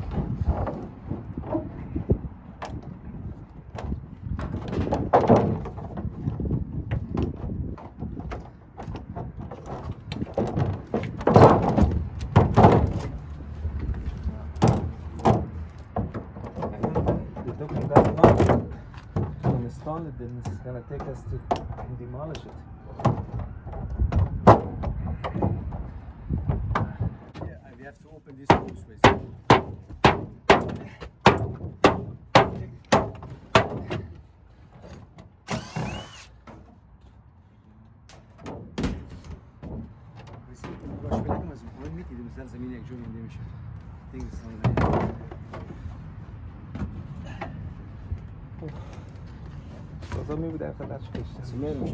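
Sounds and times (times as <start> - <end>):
bangs on sheet-metal ductwork: 3.8 - 6.4, 8.2 - 13.2, 14.6 - 19.8, 23.0 - 25.8, 28.5 - 34.2
metal scraping screech: 35.5 - 36.4.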